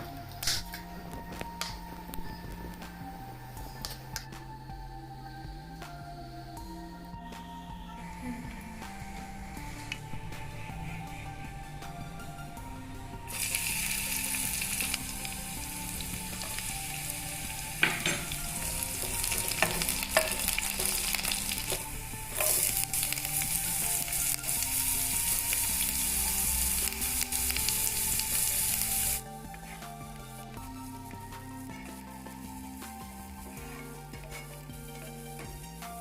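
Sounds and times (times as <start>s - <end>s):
food sizzling in hot oil: 13.3s - 29.2s
spoon scraping and knocking pan: 16.3s - 23.2s.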